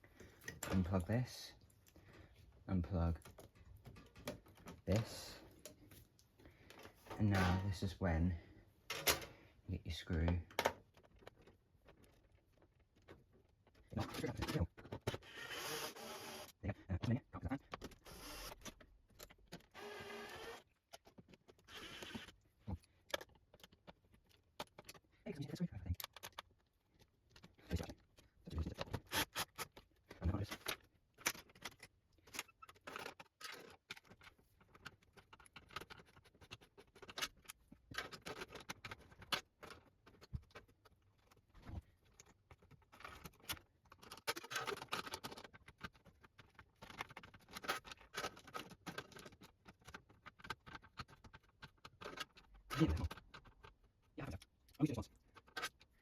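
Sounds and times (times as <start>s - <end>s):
metal and plastic parts handled: 0.0s - 15.4s, 16.4s - 56.0s
screwdriver clicking on screws: 19.6s - 20.7s, 21.7s - 22.3s.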